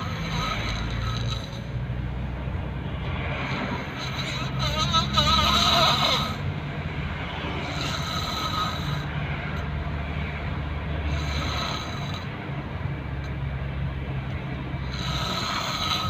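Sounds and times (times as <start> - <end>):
person snoring: 0.0 - 1.6, 3.5 - 6.4, 7.6 - 9.1, 11.1 - 12.3, 14.8 - 16.0
steady low rumble: 0.0 - 16.0.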